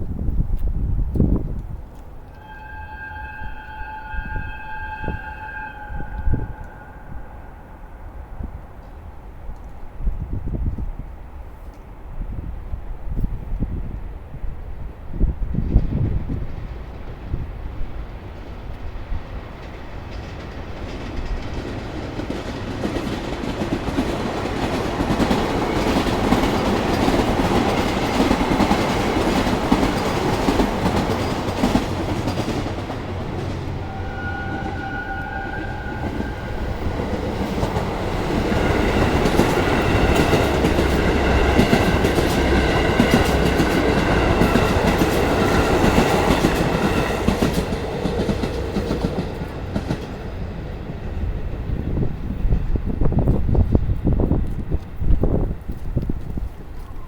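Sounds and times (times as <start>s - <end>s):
train rumble: 0.0s - 57.0s
short high tone: 2.4s - 7.6s
train wheels clattering over rail joints: 35.7s - 50.8s.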